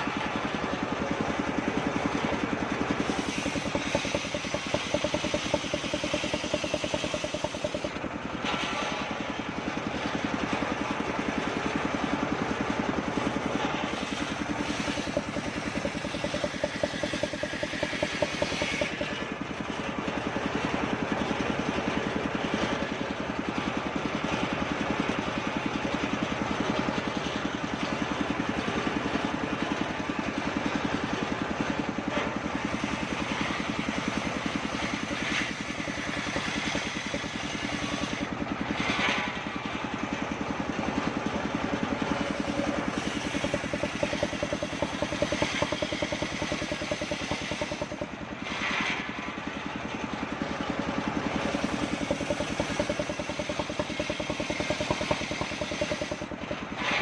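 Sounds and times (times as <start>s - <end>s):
engine running fast: 0.0s - 57.0s
circular saw cutting wood: 2.8s - 8.9s, 13.4s - 19.4s, 32.2s - 39.4s, 41.9s - 49.1s, 51.2s - 57.0s.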